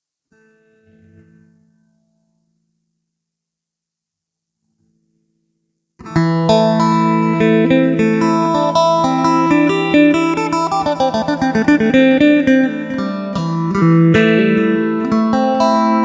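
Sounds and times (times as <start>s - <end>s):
plucked lute melody with drone: 6.0s - 16.0s.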